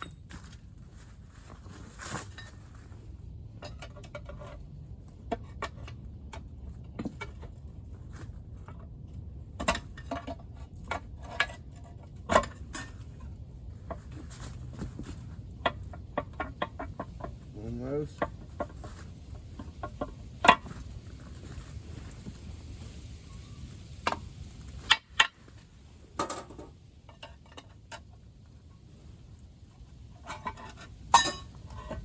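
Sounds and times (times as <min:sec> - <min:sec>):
metal engine parts clinking: 0:02.2 - 0:21.7, 0:30.2 - 0:32.0.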